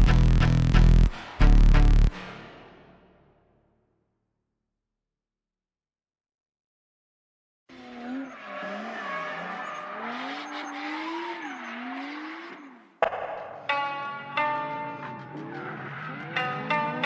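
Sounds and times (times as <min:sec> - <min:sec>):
car engine revving: 0:07.7 - 0:17.0.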